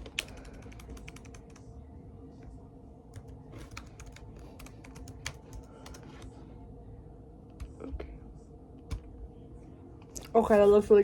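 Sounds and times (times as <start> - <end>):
laptop keyboard typing: 0.0 - 1.7, 3.1 - 6.3, 7.6 - 7.9, 8.9 - 9.1.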